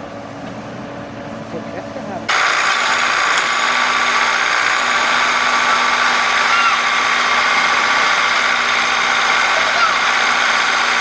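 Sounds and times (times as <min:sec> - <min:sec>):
engine running: 0:00.1 - 0:11.0.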